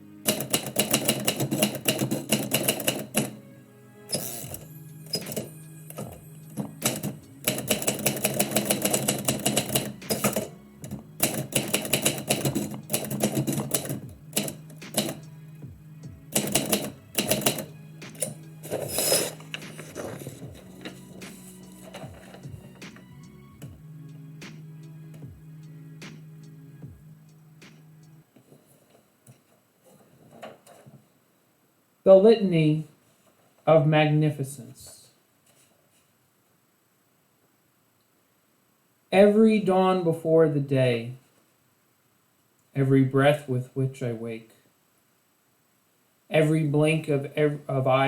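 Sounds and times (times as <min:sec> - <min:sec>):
background music: 0:00.0 - 0:28.7
typewriter keys clacking: 0:00.3 - 0:03.4, 0:04.2 - 0:15.3, 0:16.3 - 0:23.0.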